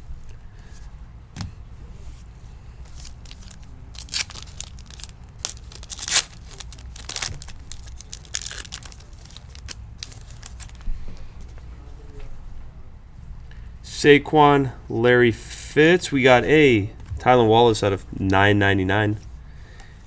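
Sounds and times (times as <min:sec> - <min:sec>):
foil wrapper crinkling and tearing: 0:02.9 - 0:10.8.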